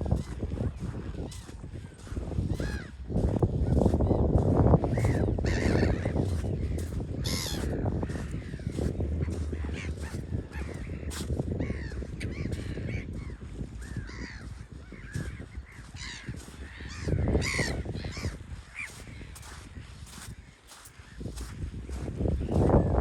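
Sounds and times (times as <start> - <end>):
seabirds calling: 0.1 - 22.9
steady low rumble: 2.0 - 16.1.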